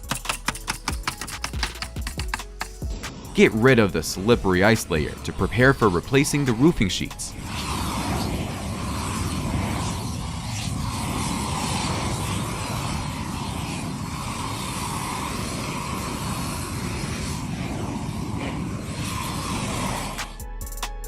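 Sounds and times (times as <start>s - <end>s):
small engine running: 0.0s - 20.6s.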